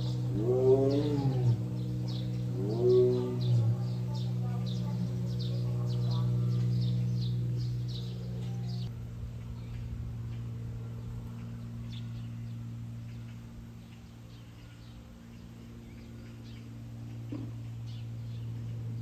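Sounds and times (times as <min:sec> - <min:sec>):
low hum: 0:00.0 - 0:19.0
small birds chirping: 0:00.0 - 0:19.0.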